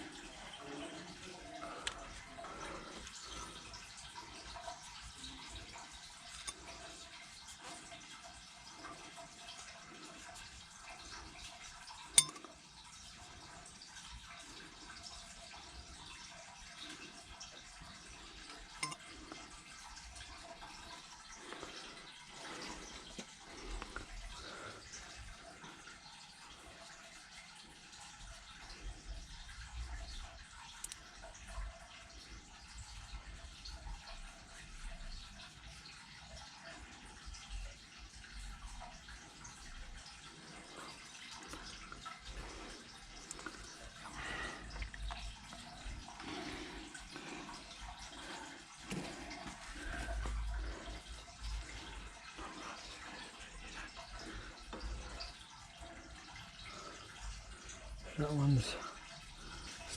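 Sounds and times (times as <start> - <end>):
water trickling and dripping: 0.0 - 59.9.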